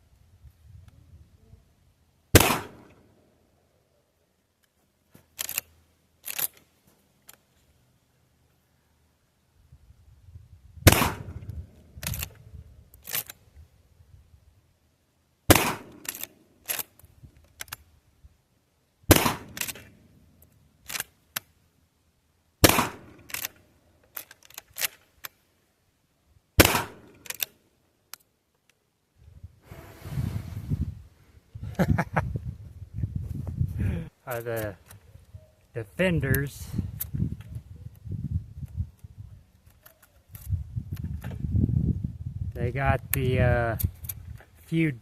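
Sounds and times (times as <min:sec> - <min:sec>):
shotgun shots: 0:02.3 - 0:03.0, 0:10.8 - 0:11.5, 0:15.5 - 0:16.2, 0:19.1 - 0:19.8, 0:22.6 - 0:23.3, 0:26.6 - 0:27.2.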